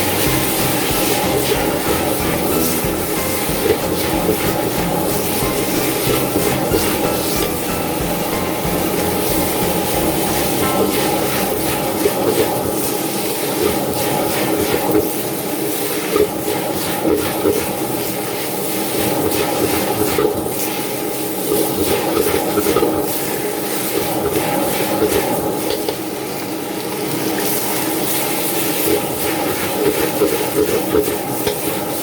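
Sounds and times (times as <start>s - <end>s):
wok burner roaring: 0.0s - 32.0s
liquid bubbling and hissing: 9.0s - 32.0s.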